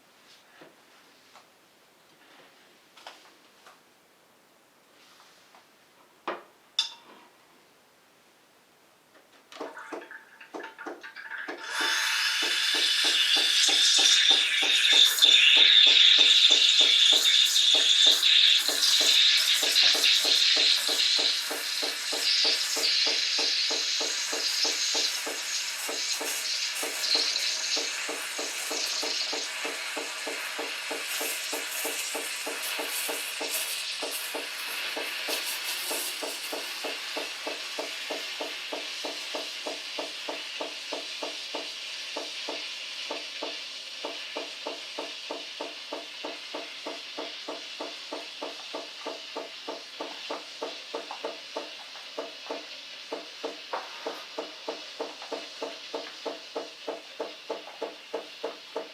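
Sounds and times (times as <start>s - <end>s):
steam wand hissing and spluttering: 11.5s - 58.9s
rhythmic pump pulsing: 11.6s - 58.9s.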